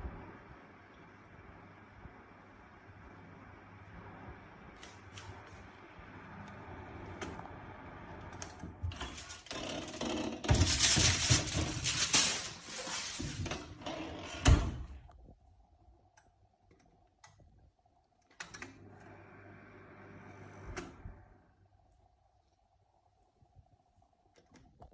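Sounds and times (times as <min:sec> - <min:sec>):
faint steady hum: 0:00.0 - 0:09.4, 0:14.4 - 0:24.9.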